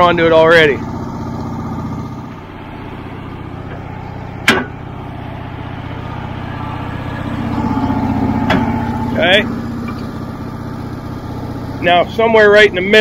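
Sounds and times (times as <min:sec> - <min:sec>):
sawmill engine idling: 0:00.0 - 0:13.0
sharp knock: 0:04.4 - 0:04.8.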